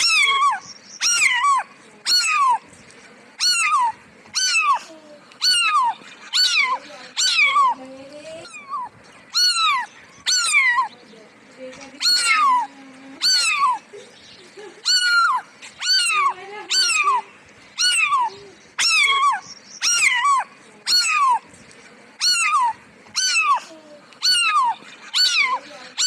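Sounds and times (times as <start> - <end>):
cat meowing: 0.0 - 2.6, 3.4 - 4.8, 5.4 - 7.8, 8.4 - 10.9, 12.0 - 13.8, 14.8 - 17.2, 17.8 - 21.4, 22.2 - 26.0.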